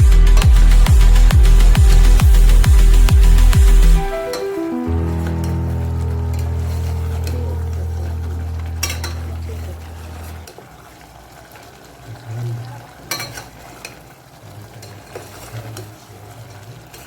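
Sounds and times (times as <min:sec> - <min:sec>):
low background music: 0:00.0 - 0:10.5
frying and sizzling: 0:00.0 - 0:17.0
utensil stirring curry in pan: 0:13.1 - 0:17.0.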